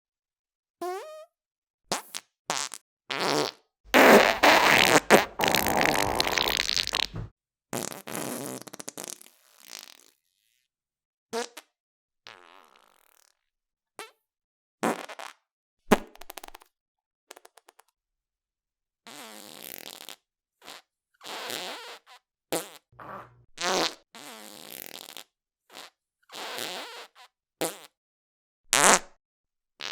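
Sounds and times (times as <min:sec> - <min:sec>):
farts: 0:01.9 - 0:10.2, 0:12.3 - 0:13.3, 0:14.8 - 0:16.6, 0:19.1 - 0:28.0, 0:28.7 - 0:29.2.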